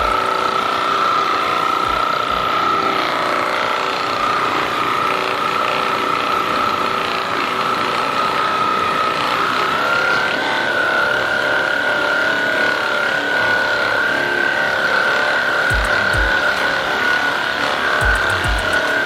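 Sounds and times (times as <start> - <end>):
motorized device whining: 0.0 - 19.0.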